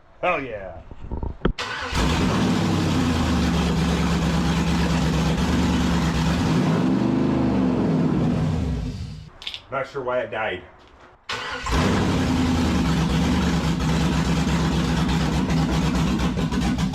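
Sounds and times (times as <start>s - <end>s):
car engine running: 1.9s - 9.3s, 11.7s - 16.9s.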